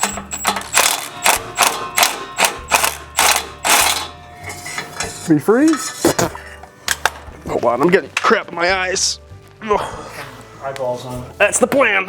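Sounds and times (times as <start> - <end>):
ratchet wrench clicking: 0.0 - 4.1.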